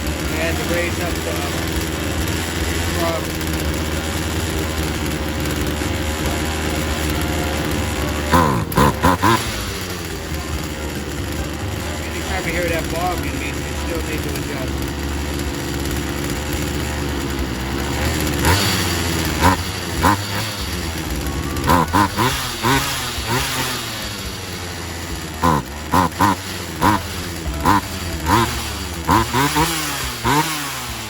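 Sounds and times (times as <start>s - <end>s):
chainsaw engine revving: 0.0s - 31.0s.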